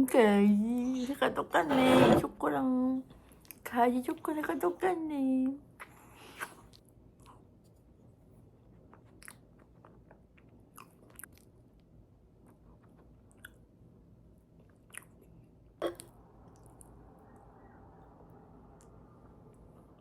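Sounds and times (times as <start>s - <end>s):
person chewing food: 8.6s - 13.7s, 14.6s - 16.9s.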